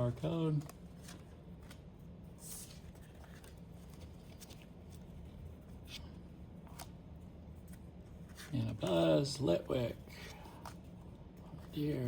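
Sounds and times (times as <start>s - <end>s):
low steady hum: 0.0s - 12.0s
trading cards being flipped: 0.1s - 6.0s, 6.6s - 7.0s.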